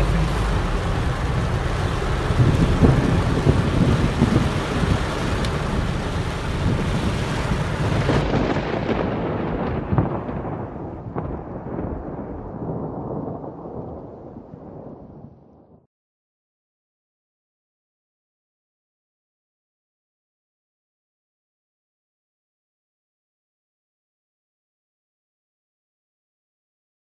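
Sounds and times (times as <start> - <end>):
rain falling: 0.0 - 15.3
thunder rumbling: 0.0 - 15.8.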